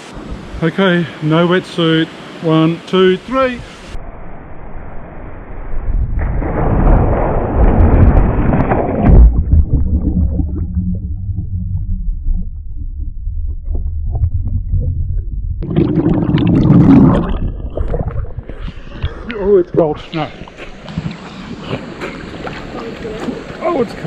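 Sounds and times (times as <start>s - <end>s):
muffled low gurgling rumble: 5.8s - 23.6s
water splashing: 6.2s - 24.0s.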